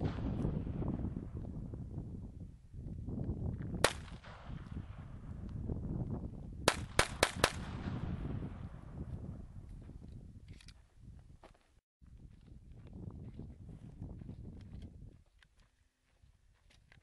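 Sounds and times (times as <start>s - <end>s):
steady low rumble: 0.0s - 10.4s
gunshots: 3.8s - 5.2s, 6.7s - 8.9s.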